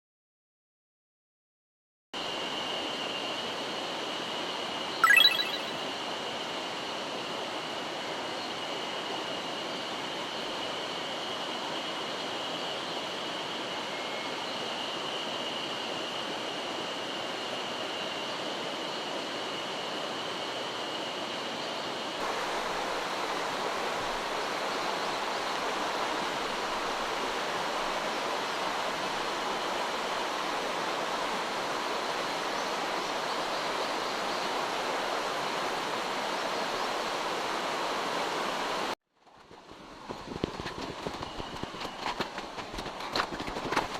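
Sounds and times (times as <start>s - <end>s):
thin steady high tone: 5.0s - 5.8s.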